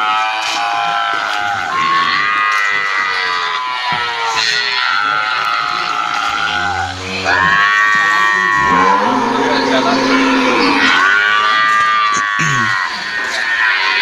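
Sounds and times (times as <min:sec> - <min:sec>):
cattle mooing: 0:04.7 - 0:12.9.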